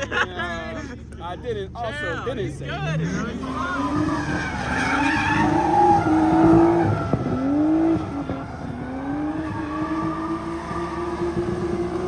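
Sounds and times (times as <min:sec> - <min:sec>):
car engine revving hard: 0:02.8 - 0:12.0
tyres squealing: 0:03.0 - 0:12.0.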